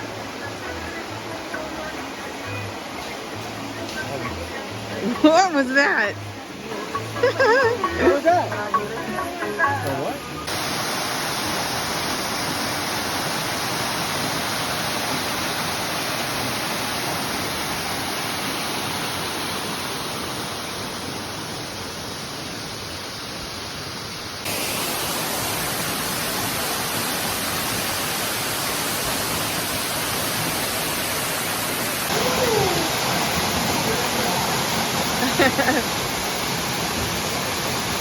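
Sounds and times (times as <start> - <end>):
waterfall rushing water: 0.0 - 38.0.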